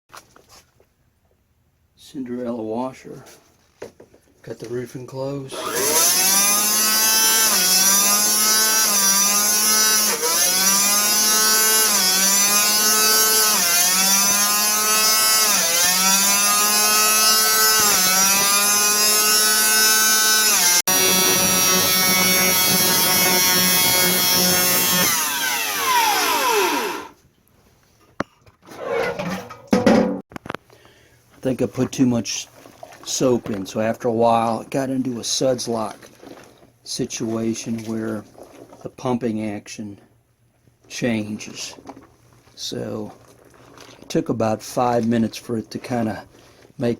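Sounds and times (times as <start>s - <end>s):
washing machine motor whining: 5.5s - 12.0s, 16.3s - 27.2s.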